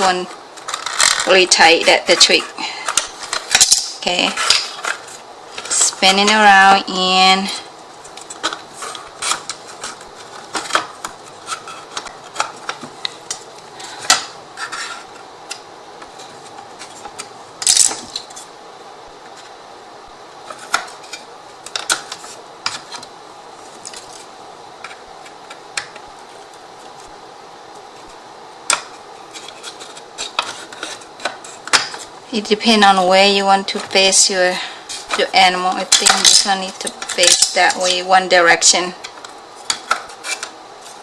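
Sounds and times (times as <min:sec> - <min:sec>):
wood pieces clicking: 0:02.9 - 0:05.0.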